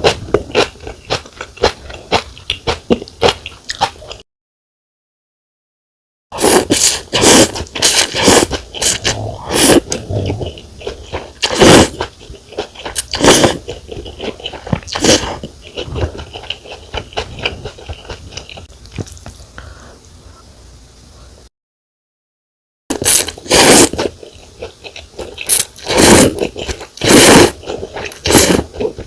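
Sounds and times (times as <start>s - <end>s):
chewing: 0.0s - 4.2s, 6.7s - 19.4s, 23.0s - 29.0s
slurping noodles: 6.4s - 18.6s, 22.9s - 29.0s.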